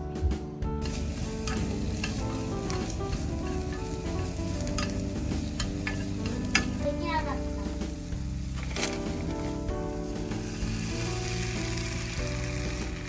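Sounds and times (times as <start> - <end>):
utensil clicking against pan: 0.8 - 6.9
food sizzling in a frying pan: 0.8 - 13.0.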